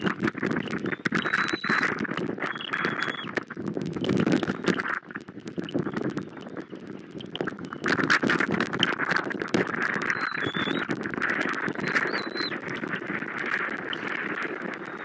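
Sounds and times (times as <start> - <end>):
heavy raindrops tapping: 0.0 - 15.0
faint thin whistle: 0.9 - 1.9, 2.5 - 3.3, 10.1 - 10.8, 11.8 - 12.5.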